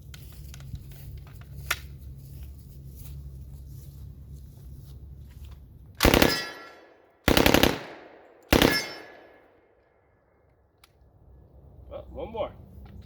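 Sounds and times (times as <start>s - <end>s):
submachine gun bursts: 6.0s - 9.4s.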